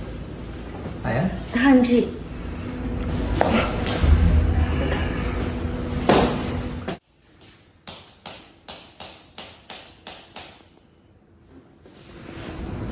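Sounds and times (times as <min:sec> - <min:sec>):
loud noisy rush: 0:03.1 - 0:06.8.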